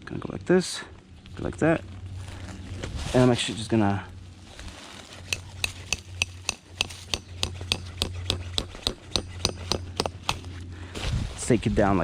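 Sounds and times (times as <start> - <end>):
low steady hum: 0.0 - 12.0
sharp evenly spaced clicks: 5.3 - 10.5.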